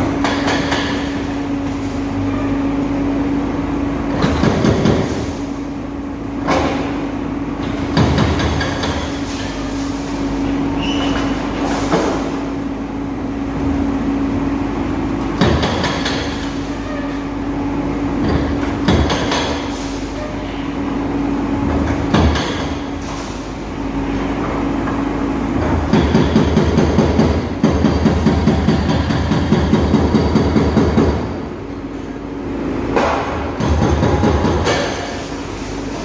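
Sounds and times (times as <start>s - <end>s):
hydraulic breaker hammering: 0.0s - 1.4s, 4.1s - 5.3s, 7.6s - 9.4s, 15.2s - 16.7s, 18.2s - 19.8s, 21.6s - 23.1s, 25.6s - 31.4s, 32.9s - 35.3s.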